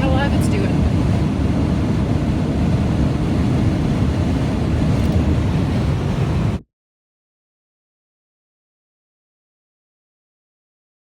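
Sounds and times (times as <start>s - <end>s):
vehicle rumbling on the move: 0.0s - 6.6s.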